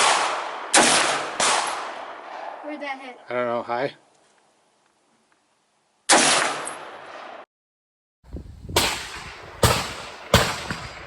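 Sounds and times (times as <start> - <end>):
gunshots echoing: 0.0 - 2.6, 6.1 - 7.4, 8.8 - 11.0.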